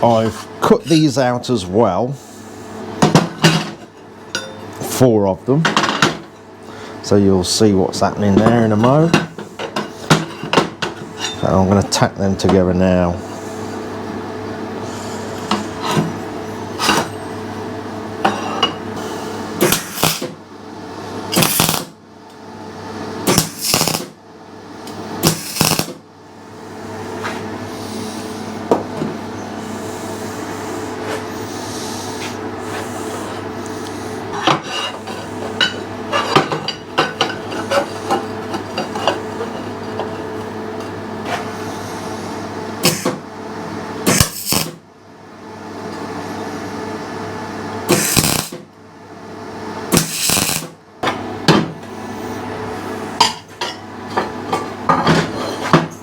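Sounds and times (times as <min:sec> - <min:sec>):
electrical hum: 0:00.0 - 0:56.0
tack welding bursts: 0:19.6 - 0:20.4, 0:21.3 - 0:22.0, 0:23.2 - 0:24.2, 0:25.2 - 0:26.0, 0:42.8 - 0:43.2, 0:44.0 - 0:44.8, 0:47.9 - 0:48.6, 0:49.9 - 0:50.8.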